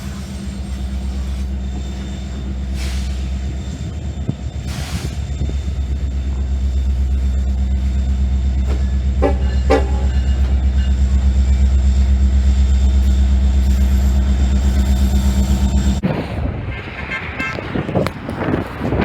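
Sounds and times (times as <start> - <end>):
train rumbling: 0.0 - 19.0
train horn toots: 8.7 - 10.6.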